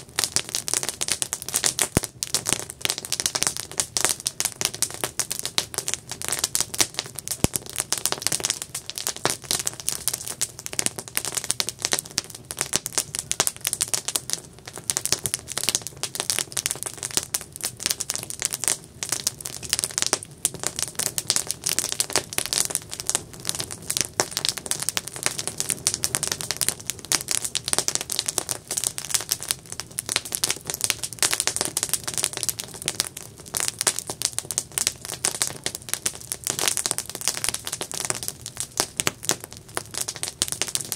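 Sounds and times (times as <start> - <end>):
campfire crackling and popping: 0.0 - 40.9.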